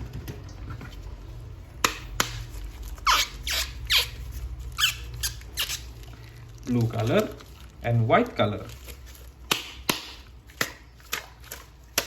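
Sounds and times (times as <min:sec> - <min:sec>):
plastic toy squeaking: 0:03.0 - 0:06.0.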